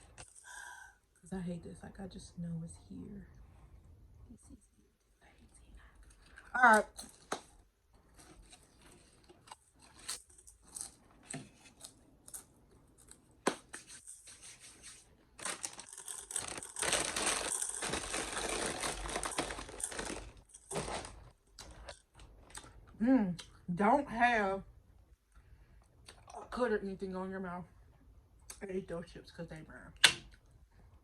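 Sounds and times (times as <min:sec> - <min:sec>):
plastic crinkling and rustling: 0:06.0 - 0:12.0, 0:12.9 - 0:22.5
plastic tearing: 0:13.0 - 0:22.1.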